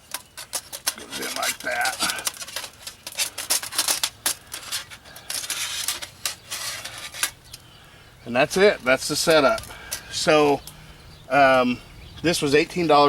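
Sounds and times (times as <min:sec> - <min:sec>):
metal stove parts clicking and scraping: 0:00.0 - 0:07.6.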